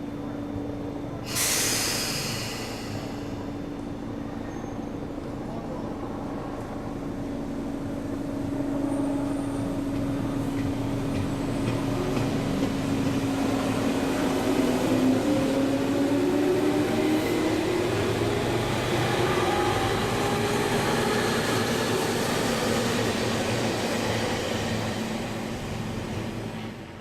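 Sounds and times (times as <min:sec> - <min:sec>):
train wheels rumbling: 0:08.1 - 0:27.0.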